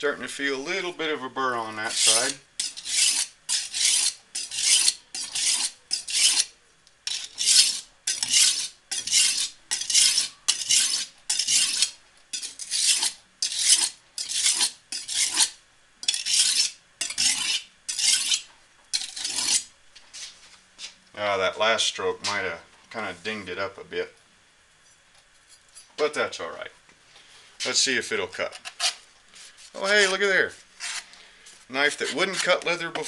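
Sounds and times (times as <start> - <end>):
knife blade scraping on brick: 1.8 - 19.7, 28.4 - 29.0, 30.8 - 31.1, 31.9 - 33.0.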